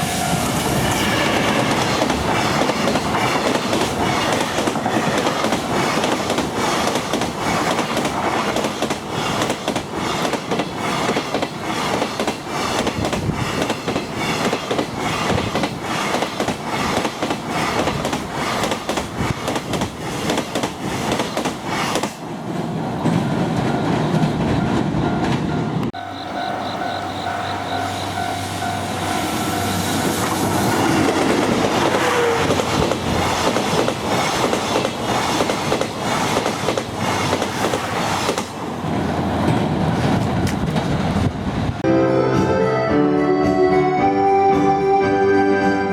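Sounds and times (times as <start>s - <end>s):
approaching train: 0.0s - 45.9s
train wheels clicking over rail joints: 0.7s - 22.3s, 30.1s - 38.7s
crossing warning bell: 23.2s - 30.3s.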